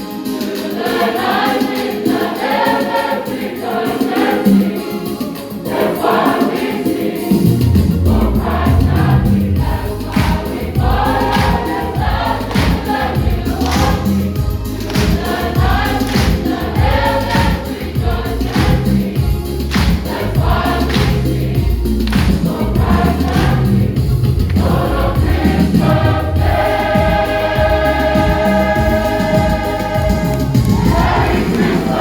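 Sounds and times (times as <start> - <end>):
choir singing: 0.0 - 32.0
accompaniment with low beat: 7.4 - 32.0.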